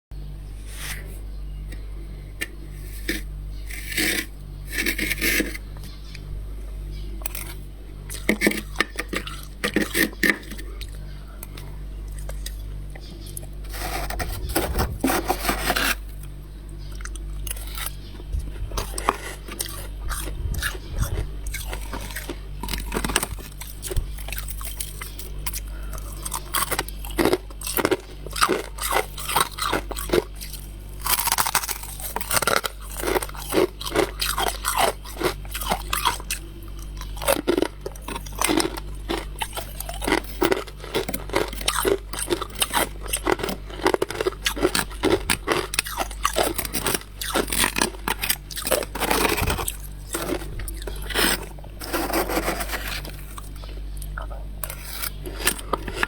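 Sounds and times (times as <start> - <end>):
frost crunching while chewed: 1.7 - 6.3, 7.2 - 56.0.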